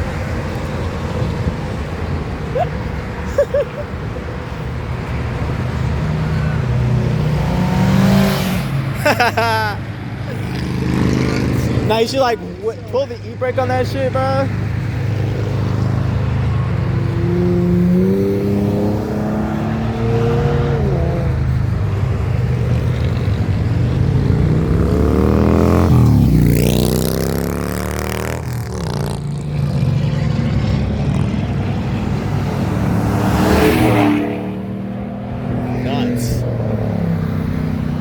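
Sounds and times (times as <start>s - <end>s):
cars accelerating past: 0.0s - 38.0s
engine revving through gear changes: 15.6s - 38.0s.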